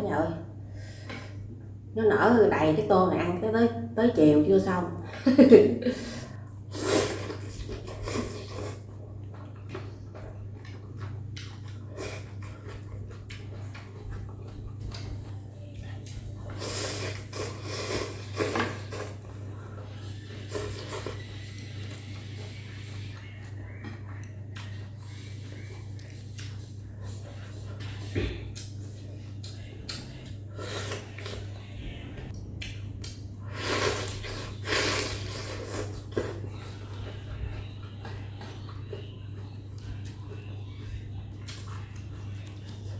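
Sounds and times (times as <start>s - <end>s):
steady low hum: 0.0s - 42.9s
person slurping noodles: 6.7s - 8.8s, 16.6s - 19.2s, 33.5s - 36.4s
chewing and lip smacks: 9.1s - 15.2s, 23.0s - 30.4s, 37.9s - 42.9s.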